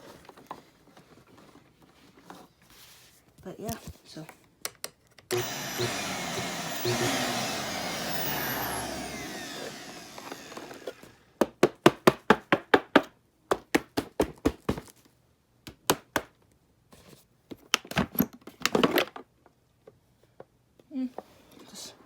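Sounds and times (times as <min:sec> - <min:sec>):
vacuum cleaner motor winding down: 0:05.3 - 0:11.2.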